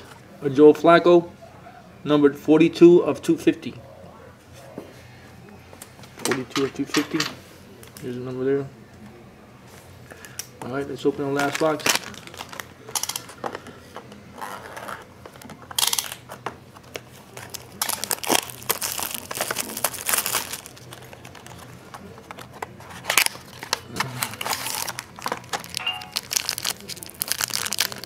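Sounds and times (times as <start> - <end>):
plastic wrapping crinkling and tearing: 11.3 - 13.4, 14.4 - 28.0.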